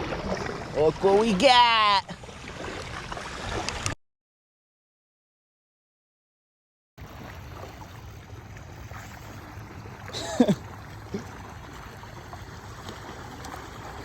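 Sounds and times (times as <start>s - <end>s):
surf washing: 7.0s - 14.0s.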